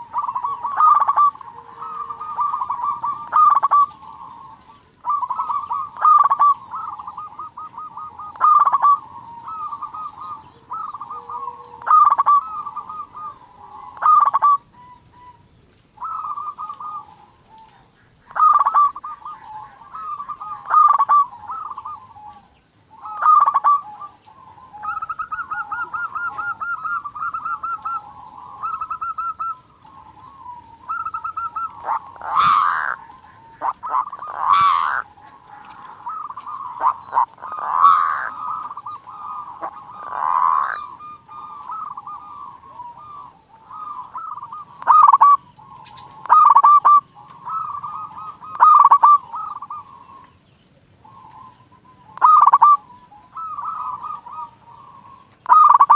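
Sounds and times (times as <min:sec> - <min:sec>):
doves cooing: 0:00.0 - 0:55.9.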